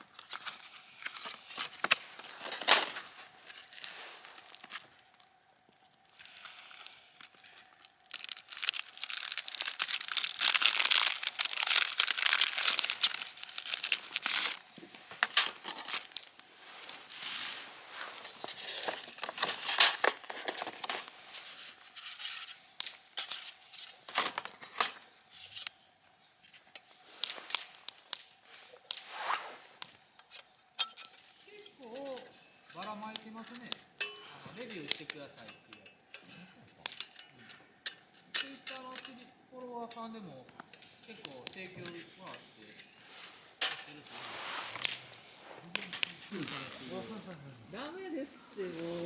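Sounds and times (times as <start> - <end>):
packaging crinkling and tearing: 0.0 - 25.8, 26.8 - 29.0
faint steady hum: 0.0 - 49.0.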